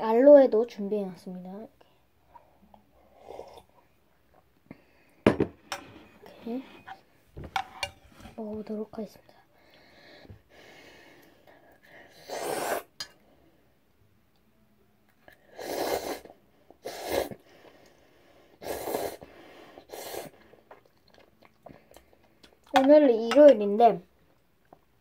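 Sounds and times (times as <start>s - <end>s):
person blowing and slurping noodles: 12.0s - 13.0s, 15.4s - 17.4s, 18.5s - 20.8s.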